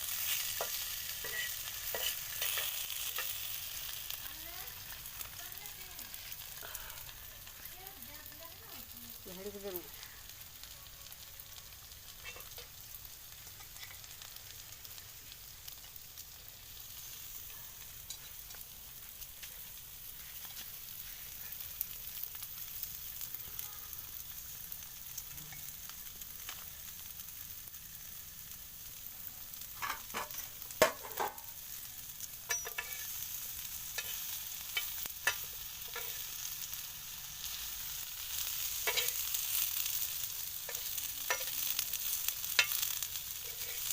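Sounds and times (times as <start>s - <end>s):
vegetables sizzling in oil: 0.0s - 43.9s
spatula scraping a pan: 0.1s - 4.1s, 32.5s - 33.2s, 38.3s - 39.9s, 40.6s - 43.9s.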